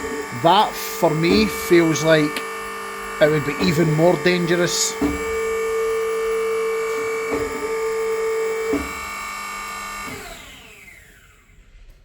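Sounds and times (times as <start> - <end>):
motor winding down: 0.0 - 7.2
electric motor humming: 0.0 - 10.1.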